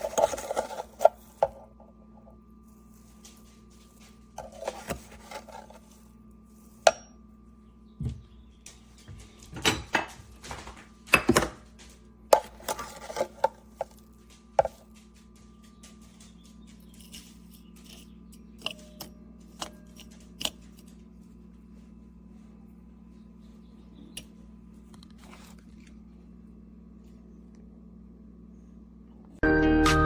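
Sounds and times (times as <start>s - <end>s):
kitchen items knocking and clattering: 0.0s - 1.7s, 8.0s - 21.0s
faint steady hum: 0.0s - 30.0s.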